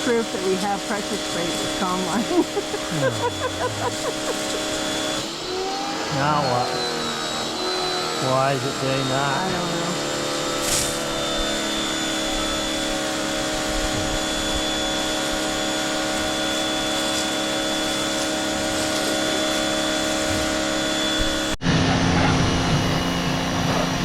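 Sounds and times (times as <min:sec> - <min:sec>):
pressure washer pump hum: 0:00.0 - 0:24.0
water spray hiss: 0:10.6 - 0:11.1.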